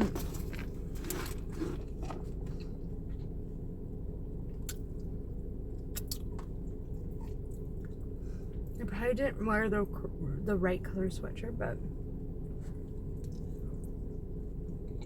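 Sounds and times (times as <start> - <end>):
low hum: 0.0 - 15.0
person chewing food: 4.5 - 8.8.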